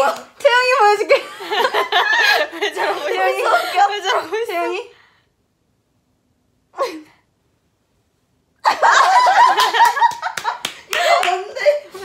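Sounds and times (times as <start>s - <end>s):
voices talking and laughing: 0.0s - 5.0s.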